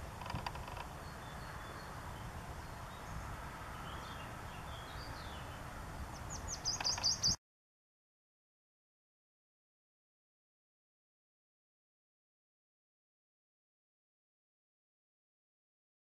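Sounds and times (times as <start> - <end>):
small songbirds singing: 0.3 - 7.4.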